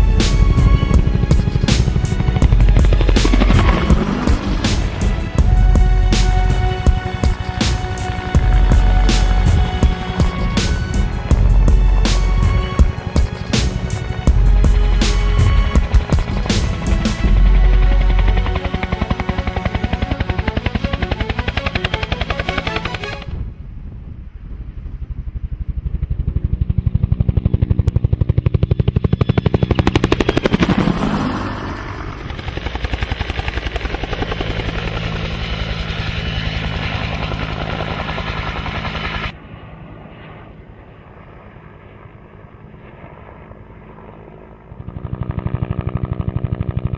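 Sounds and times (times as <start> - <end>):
electronic helicopter rotor chopping: 0.0 - 23.3, 28.9 - 39.3.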